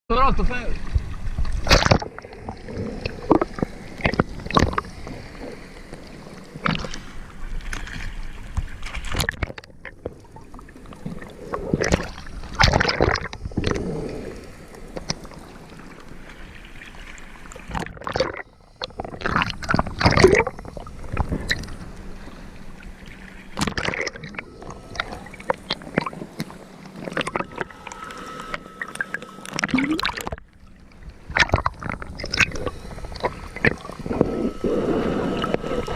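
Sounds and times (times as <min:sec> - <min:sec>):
water gurgling and sloshing: 0:00.1 - 0:35.9
splashes and knocks: 0:07.7 - 0:09.7, 0:11.8 - 0:13.8, 0:23.6 - 0:26.1, 0:31.3 - 0:32.5.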